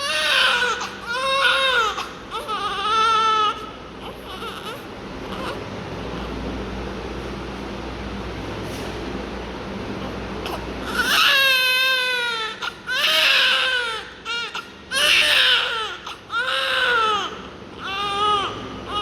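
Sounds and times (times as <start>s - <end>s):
newborn baby crying: 0.0s - 5.6s, 10.4s - 19.0s
steady low hum: 0.0s - 19.0s.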